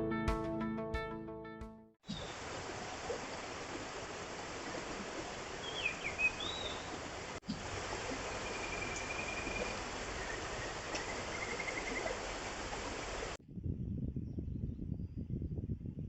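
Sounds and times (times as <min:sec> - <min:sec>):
river flowing: 0:02.1 - 0:13.4
bird whistling: 0:05.6 - 0:06.9, 0:08.4 - 0:12.2
high bird trill: 0:05.6 - 0:07.0, 0:08.3 - 0:12.4.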